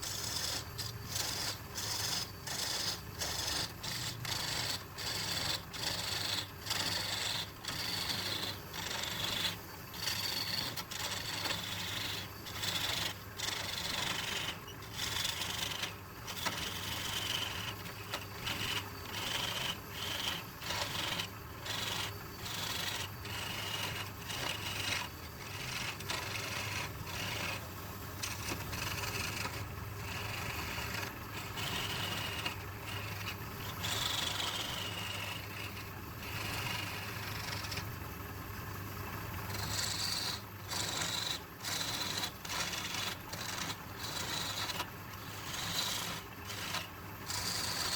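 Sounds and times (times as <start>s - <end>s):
tool rubbing spinning wood: 0.0s - 38.0s, 38.6s - 47.9s
wood lathe motor hum: 0.1s - 47.9s.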